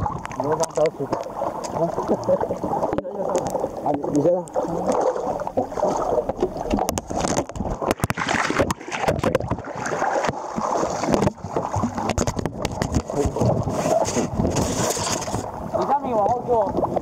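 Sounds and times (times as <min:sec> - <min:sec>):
crackles: 0:00.0 - 0:09.6
sea water sloshing and splashing: 0:00.0 - 0:17.0
wind on microphone: 0:10.9 - 0:17.0.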